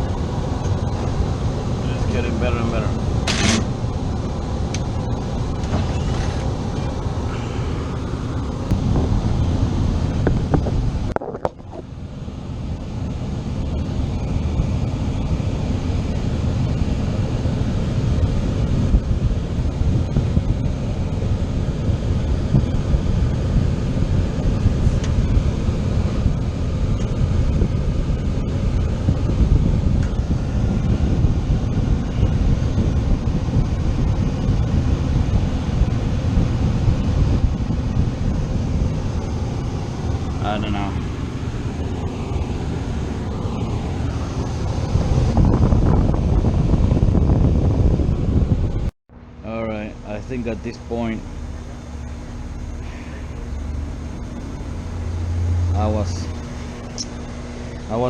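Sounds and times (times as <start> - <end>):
air conditioning low rushing noise: 0.0 - 58.0.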